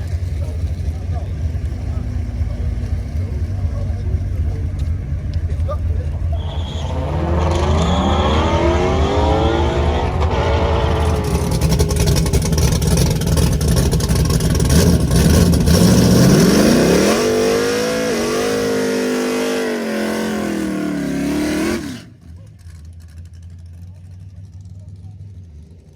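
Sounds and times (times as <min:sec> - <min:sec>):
low rumble: 0:00.0 - 0:21.4
car engine accelerating: 0:00.0 - 0:25.9.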